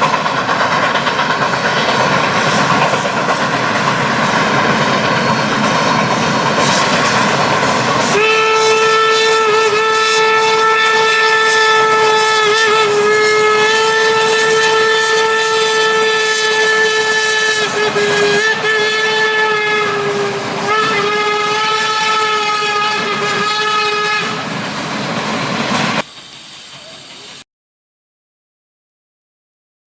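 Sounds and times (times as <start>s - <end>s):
train running: 0.0s - 27.4s
long train whistle: 8.0s - 24.5s.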